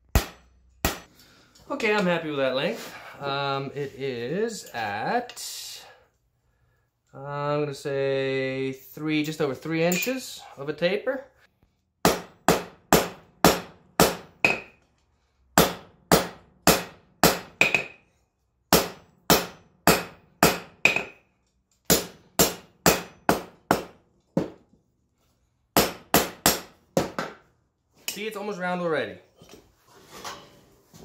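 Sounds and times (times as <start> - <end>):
hammer striking hot steel on anvil: 0.0 - 1.1, 12.0 - 14.8, 15.6 - 18.1, 18.7 - 21.2, 21.9 - 24.6, 25.8 - 27.4.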